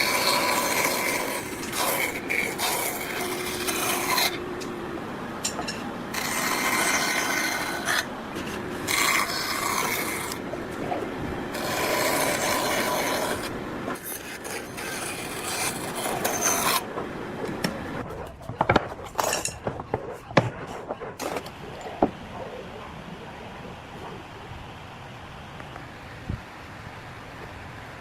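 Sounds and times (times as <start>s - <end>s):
hand tool scraping wood: 0.0s - 4.7s, 5.4s - 22.2s.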